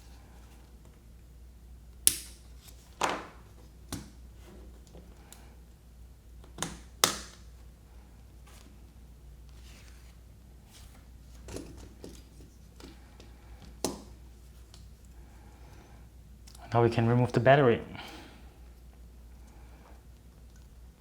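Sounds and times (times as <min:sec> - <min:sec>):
sharp clicks and snaps of small tools: 0:02.1 - 0:02.4.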